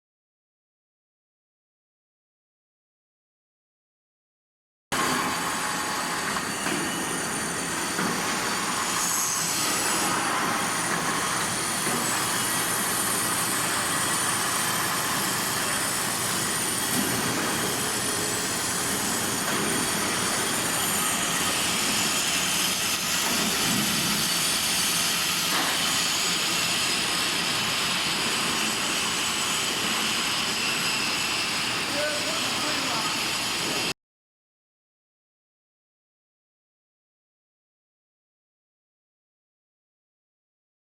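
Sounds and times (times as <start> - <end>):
lathe machining hiss: 5.0 - 33.9.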